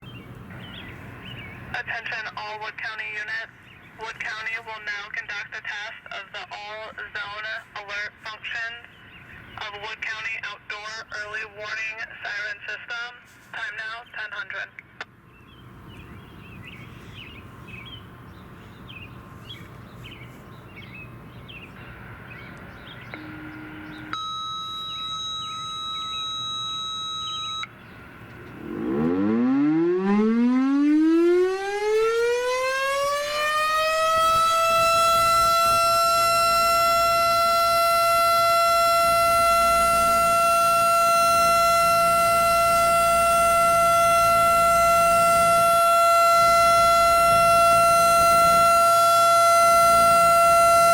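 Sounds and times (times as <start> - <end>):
steady tone: 23.1 - 27.7, 28.4 - 33.4
warning siren rising wail: 23.1 - 50.9.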